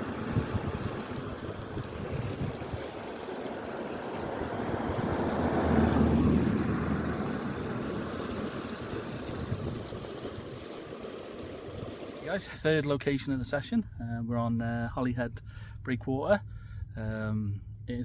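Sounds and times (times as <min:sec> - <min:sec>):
wind on microphone: 0:00.0 - 0:12.2
sea wash: 0:00.0 - 0:13.7.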